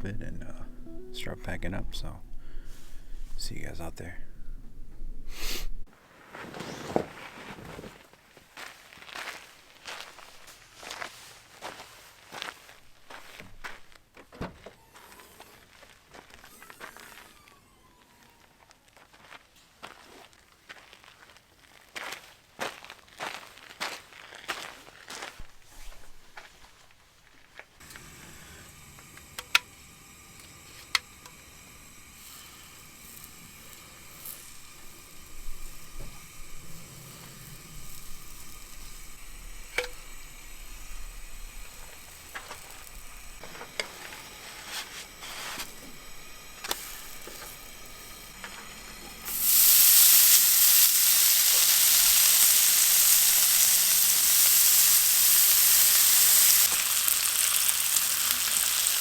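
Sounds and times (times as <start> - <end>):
food sizzling in a pan: 27.9 - 59.0.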